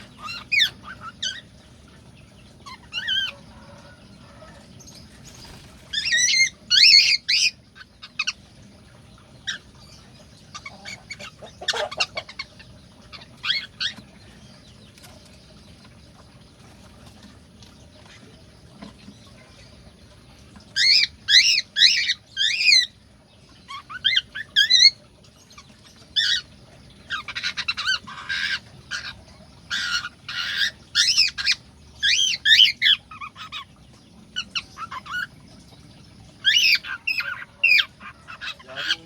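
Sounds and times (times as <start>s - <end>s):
cockatiels chattering: 0.0s - 1.5s, 36.4s - 39.0s
cockatiels squawking: 0.0s - 1.5s, 10.5s - 14.1s, 27.1s - 33.7s, 34.4s - 35.3s, 36.4s - 39.0s.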